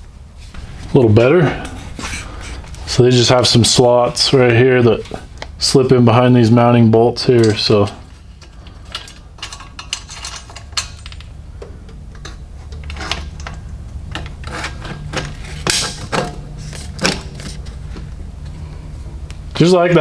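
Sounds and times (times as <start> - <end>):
steady low hum: 0.0 - 20.0
metallic clicks and clinks: 7.4 - 11.3.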